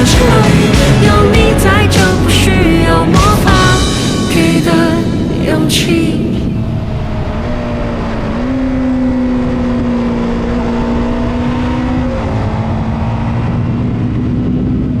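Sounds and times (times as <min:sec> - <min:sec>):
motorcycle engine at high revs: 0:06.6 - 0:15.0.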